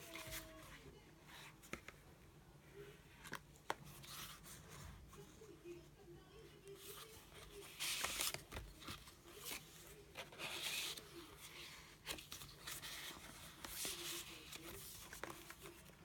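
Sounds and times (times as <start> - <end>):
paper pages rustling: 2.8 - 5.4, 6.7 - 16.0.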